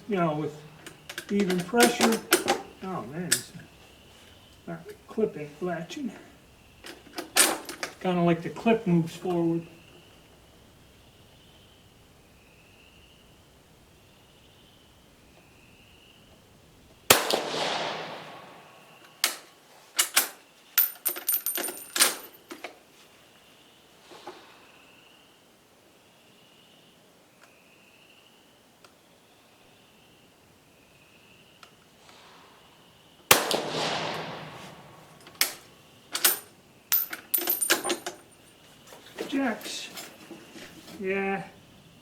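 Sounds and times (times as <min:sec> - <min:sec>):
rifle shot: 0:17.1 - 0:19.4, 0:33.3 - 0:35.8.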